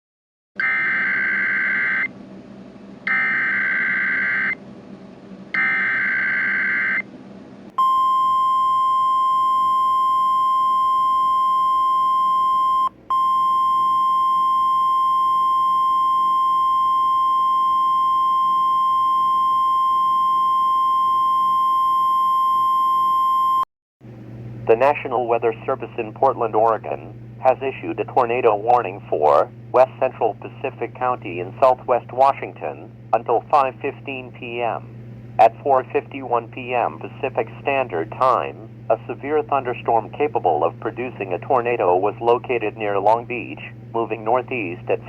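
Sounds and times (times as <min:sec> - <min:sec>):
steady warning alarm tone: 0:00.6 - 0:02.1, 0:03.1 - 0:04.6, 0:05.6 - 0:07.0, 0:07.8 - 0:21.8.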